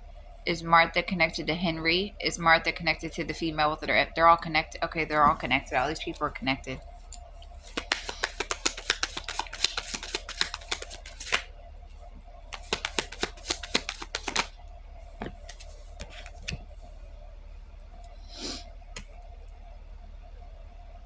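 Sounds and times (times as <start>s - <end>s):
cards riffling: 7.6s - 11.5s, 12.5s - 14.5s, 15.2s - 16.6s
card sliding: 7.7s - 11.5s, 12.5s - 14.5s
card snaps: 7.7s - 11.5s, 12.5s - 14.5s.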